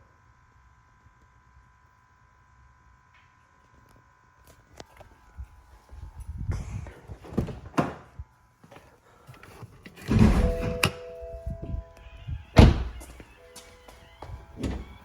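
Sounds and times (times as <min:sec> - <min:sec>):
steady tone: 0:10.3 - 0:15.0.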